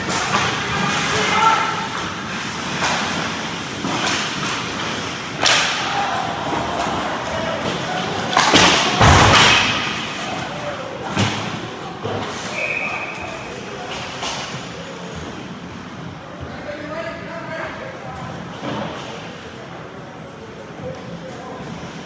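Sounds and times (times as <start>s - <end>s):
voices: 0.0s - 15.5s
hard thuds against boards: 8.4s - 10.2s.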